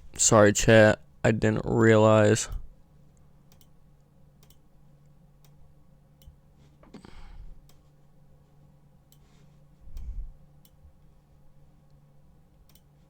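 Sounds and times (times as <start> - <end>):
low electrical hum: 0.0 - 13.0
computer clicks: 3.5 - 3.8, 4.4 - 4.7, 12.6 - 12.9.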